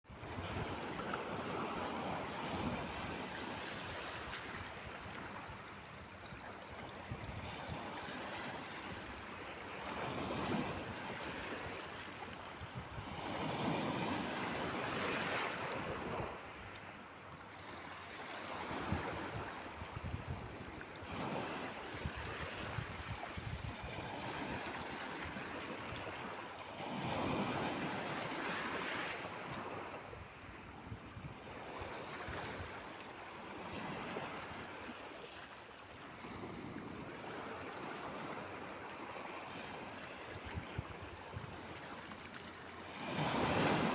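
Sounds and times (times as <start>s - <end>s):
wind buffeting microphone: 18.7s - 26.3s
sea waves breaking: 31.5s - 43.9s.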